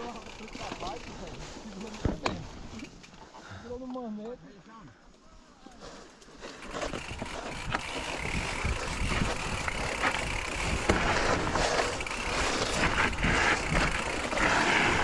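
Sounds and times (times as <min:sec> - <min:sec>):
bike rattling clicks: 0:00.0 - 0:04.4, 0:06.0 - 0:15.0
bike tyres on dirt and rock: 0:00.0 - 0:15.0.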